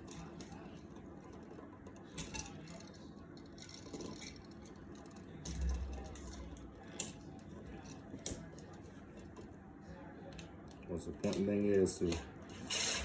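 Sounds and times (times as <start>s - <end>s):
small clicks and scrapes: 0.0s - 9.5s.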